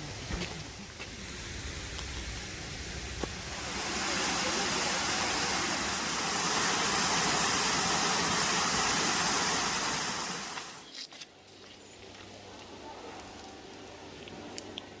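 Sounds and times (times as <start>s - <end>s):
wind rustling bamboo leaves: 0.0s - 15.0s.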